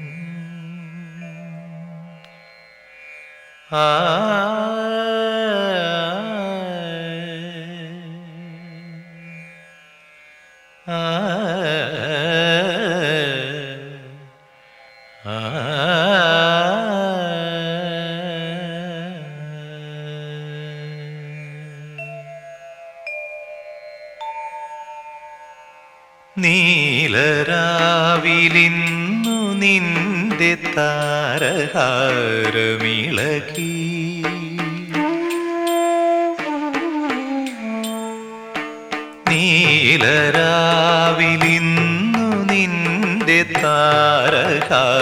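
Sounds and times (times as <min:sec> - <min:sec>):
melodic phrases with bending pitch: 0:27.7 - 0:45.0.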